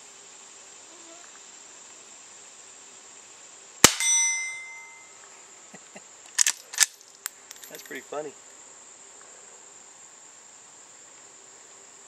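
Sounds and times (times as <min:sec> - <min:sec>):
crickets chirping: 0:00.0 - 0:12.0
steel target ringing: 0:03.8 - 0:05.2.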